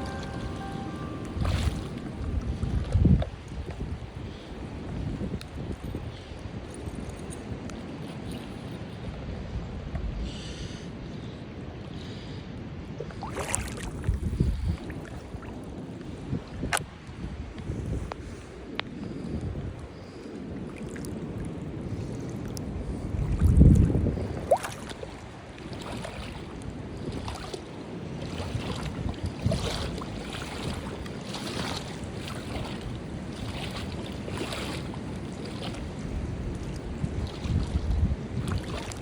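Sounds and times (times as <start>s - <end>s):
sea waves splashing: 0.0s - 5.2s, 24.1s - 39.0s
wind buffeting microphone: 0.0s - 10.4s, 12.5s - 39.0s.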